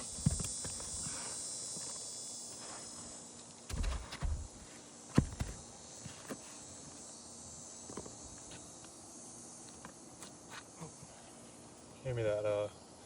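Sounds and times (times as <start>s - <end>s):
knocks and taps on shingle roof: 3.7s - 5.6s.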